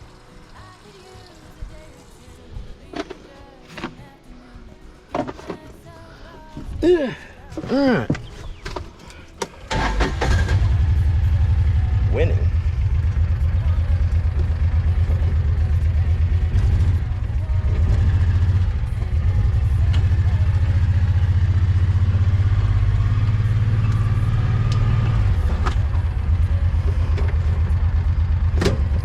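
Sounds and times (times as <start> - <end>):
engine idling: 8.0 - 29.0.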